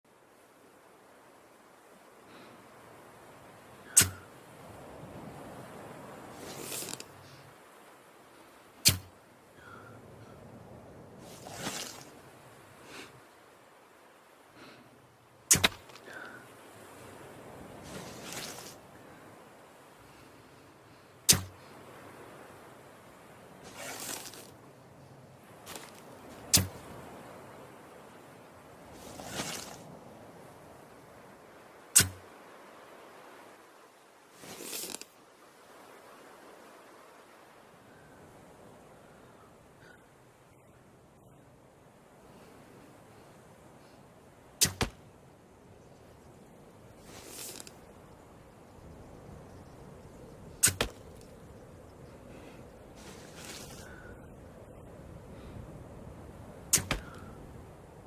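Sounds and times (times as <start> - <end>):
crossbow string snap: 3.9 - 4.2, 8.8 - 9.1, 21.3 - 21.6, 26.5 - 26.8, 32.0 - 32.2, 44.6 - 45.0, 56.7 - 57.2
crossbow swish: 3.9 - 4.2, 6.4 - 7.1, 8.8 - 9.1, 11.2 - 12.1, 15.5 - 16.0, 17.8 - 18.8, 21.3 - 21.6, 23.7 - 24.5, 25.7 - 26.8, 29.0 - 29.9, 32.0 - 32.3, 34.4 - 35.1, 44.6 - 45.0, 47.0 - 47.8, 50.6 - 51.2, 53.0 - 53.8, 56.7 - 57.2.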